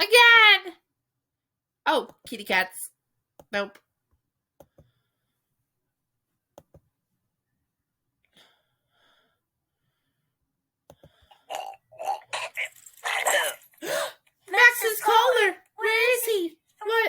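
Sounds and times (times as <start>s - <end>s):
person breathing and grunting: 11.0s - 14.3s.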